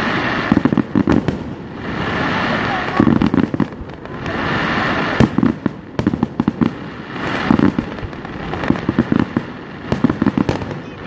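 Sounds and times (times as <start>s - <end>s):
fireworks bangs and pops: 0.0s - 11.0s
fireworks hissing crackle: 0.0s - 11.0s.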